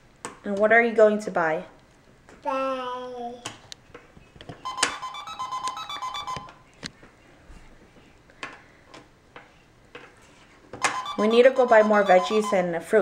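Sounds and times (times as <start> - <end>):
toy cash register electronic tune: 4.6 - 6.6, 10.8 - 12.7.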